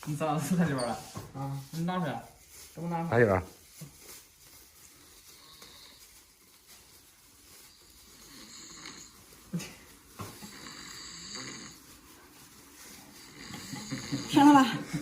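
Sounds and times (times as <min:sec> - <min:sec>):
man snoring heavily: 0:08.2 - 0:09.2, 0:10.4 - 0:11.8, 0:13.2 - 0:14.5.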